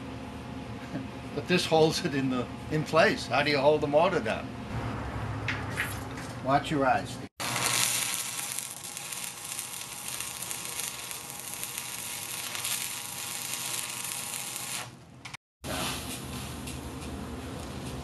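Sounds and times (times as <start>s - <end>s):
arc welding hiss: 7.4s - 15.0s.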